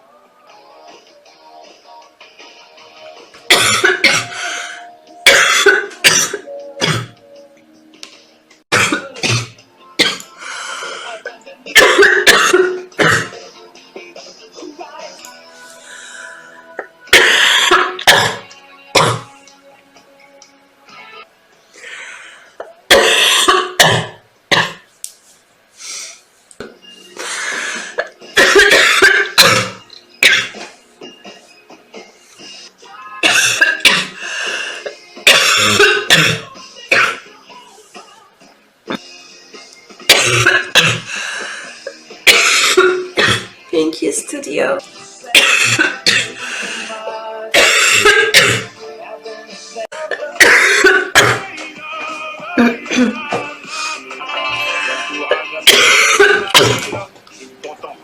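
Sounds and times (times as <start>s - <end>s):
quiet background music: 0.0s - 58.0s
girl coughing: 3.5s - 4.3s, 5.2s - 7.1s, 8.7s - 10.2s, 11.7s - 13.4s, 17.1s - 19.3s, 22.9s - 24.8s, 28.0s - 30.6s, 33.2s - 34.2s, 42.2s - 43.6s, 45.3s - 46.3s, 47.6s - 48.7s, 50.4s - 51.4s, 55.7s - 57.0s.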